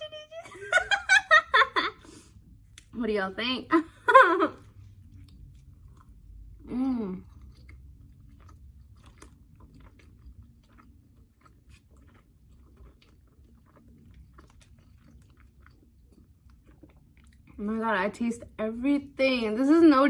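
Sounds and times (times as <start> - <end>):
person chewing sandwich: 4.5 - 17.6.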